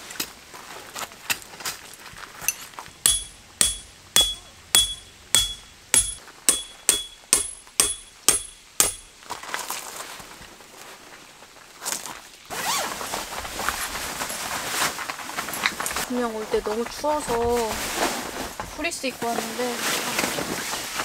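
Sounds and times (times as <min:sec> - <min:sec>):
hammer striking metal tent peg: 0:02.5 - 0:09.2.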